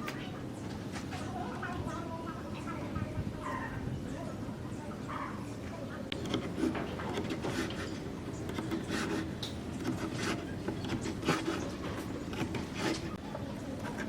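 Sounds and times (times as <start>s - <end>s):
hand tool rasping wood: 6.1s - 13.2s.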